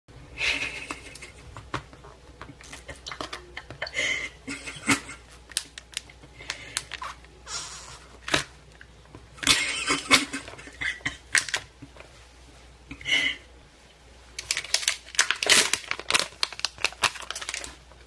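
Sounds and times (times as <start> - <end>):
crinkling rustle: 14.4 - 18.0.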